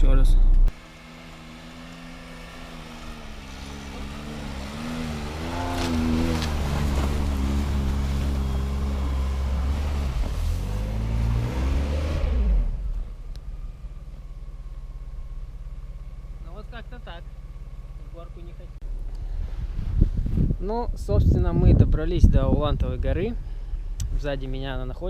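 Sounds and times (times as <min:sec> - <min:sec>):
car engine revving hard: 0:00.8 - 0:13.0.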